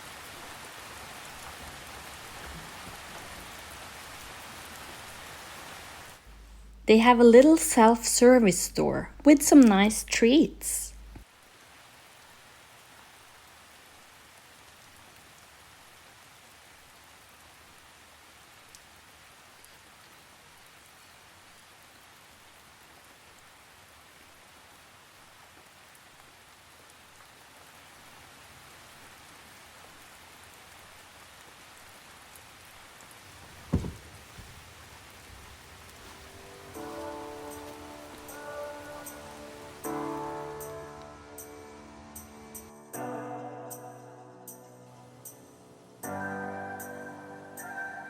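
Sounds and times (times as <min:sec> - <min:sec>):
light rain hissing: 0:00.0 - 0:42.8
low thud: 0:33.3 - 0:35.6.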